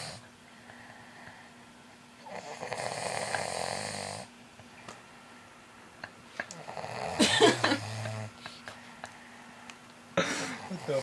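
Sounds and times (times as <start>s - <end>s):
person snoring: 2.2s - 4.3s, 6.6s - 8.3s.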